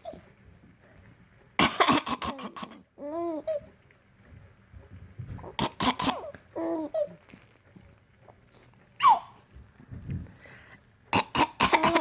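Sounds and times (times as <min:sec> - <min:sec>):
person coughing: 0:01.6 - 0:02.8, 0:11.2 - 0:12.0
baby laughing squeal: 0:09.0 - 0:09.4.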